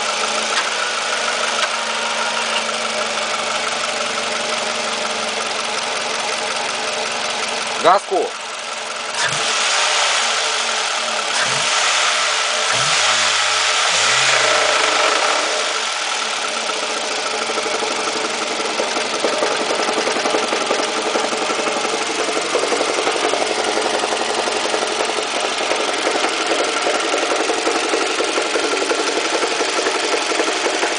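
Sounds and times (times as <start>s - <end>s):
engine idling with fast knocking: 0.0s - 30.9s
car engine revving: 8.9s - 30.9s.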